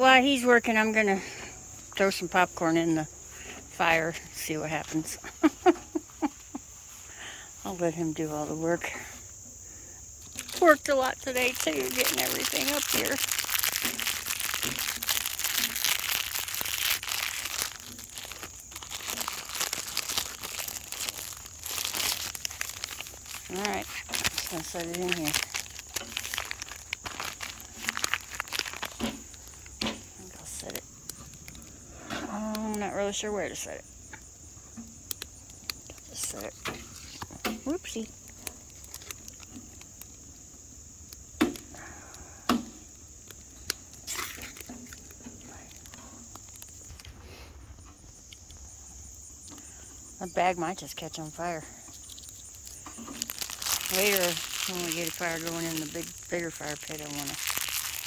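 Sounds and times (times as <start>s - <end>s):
crickets trilling: 0.0s - 58.0s
popcorn bag crinkling: 10.2s - 33.7s, 35.0s - 40.4s, 43.2s - 47.1s, 50.8s - 58.0s.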